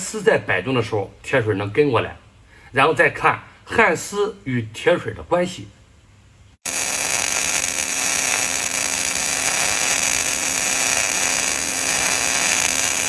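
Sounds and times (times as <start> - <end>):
welding arc hissing: 6.6 - 13.0.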